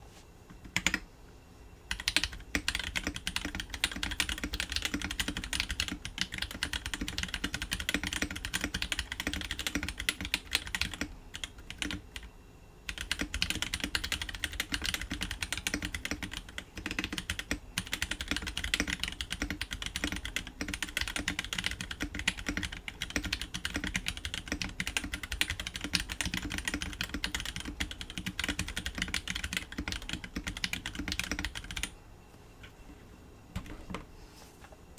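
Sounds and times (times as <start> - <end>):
fast typing on mechanical keyboard: 0.6 - 1.0, 1.9 - 31.9.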